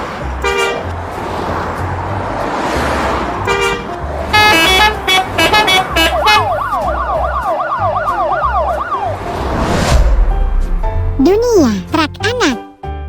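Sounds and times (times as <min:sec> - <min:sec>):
vehicle horn toot: 0:04.4 - 0:06.5
emergency siren wailing: 0:06.5 - 0:09.2.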